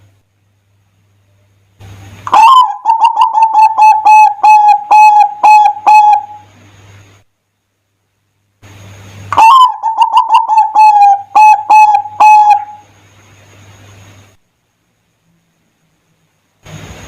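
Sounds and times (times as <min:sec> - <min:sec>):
dove cooing: 0:02.2 - 0:06.5, 0:09.3 - 0:12.9.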